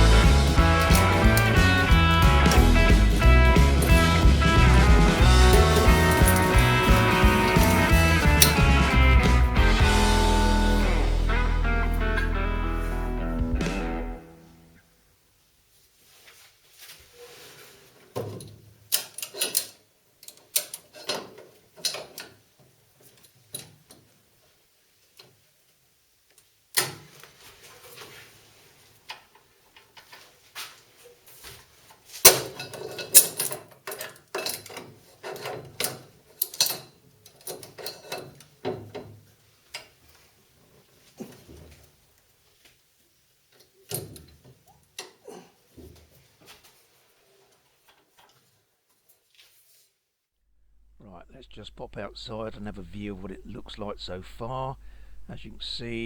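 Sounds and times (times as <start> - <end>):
metal scraping: 0.0 - 9.6.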